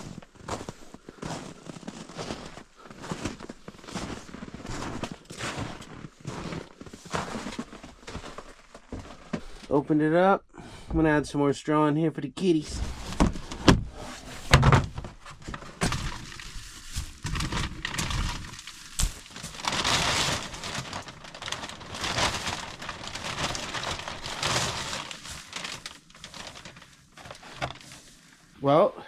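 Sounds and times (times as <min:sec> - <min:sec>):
dry straw rustling: 0:15.8 - 0:27.5.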